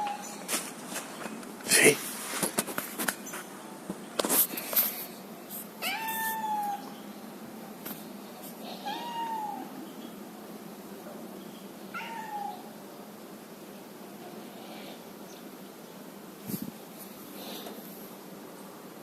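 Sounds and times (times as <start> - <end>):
cat meowing: 5.8 - 6.9, 8.7 - 9.8, 11.9 - 12.7.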